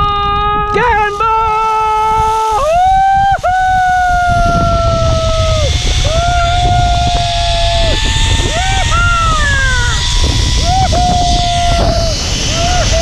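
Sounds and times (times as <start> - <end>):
person yelling whoops: 0.0 - 13.0
wind rushing rumble: 0.0 - 13.0
trolley running on cable: 4.9 - 13.0.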